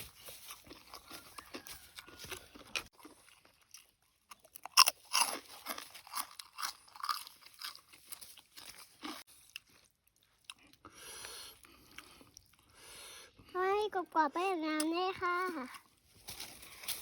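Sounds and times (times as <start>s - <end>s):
person chewing crisp food: 0.0s - 13.5s.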